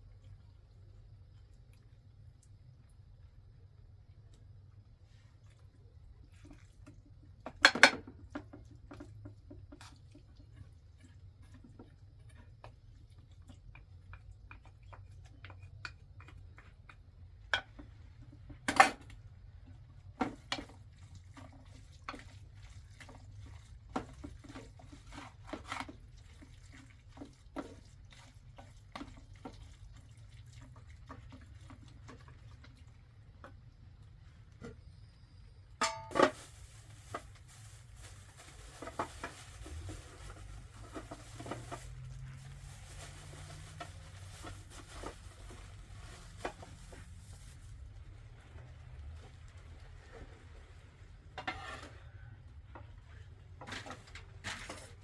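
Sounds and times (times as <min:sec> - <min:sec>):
dishes and utensils clinking: 0:35.8 - 0:36.4.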